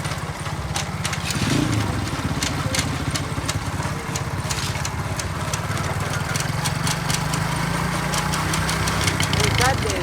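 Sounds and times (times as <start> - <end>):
small motorcycle engine idling: 0.0 - 10.0
sharp ticks: 2.2 - 10.0.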